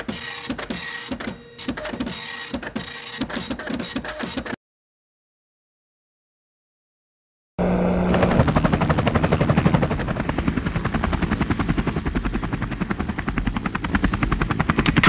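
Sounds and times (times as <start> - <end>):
helicopter rotor blades chopping: 8.1 - 15.0.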